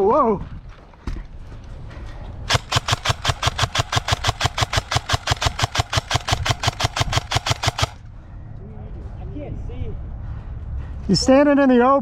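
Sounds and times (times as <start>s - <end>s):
airsoft gun rapid firing: 2.5s - 8.0s.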